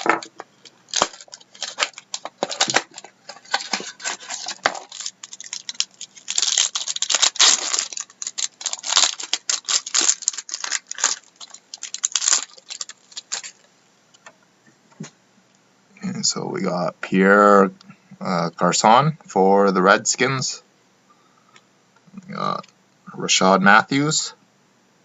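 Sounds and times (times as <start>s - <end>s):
card pack wrapper crinkling: 0.0s - 13.7s.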